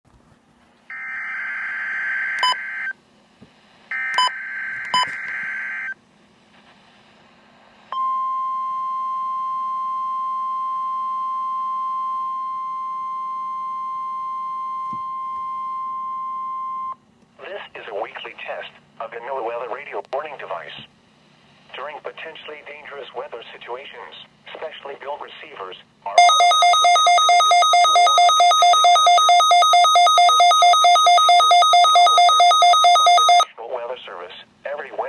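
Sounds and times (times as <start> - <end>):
steady warning alarm tone: 3.9 - 6.0, 26.2 - 33.5
digital data bursts: 26.2 - 33.4.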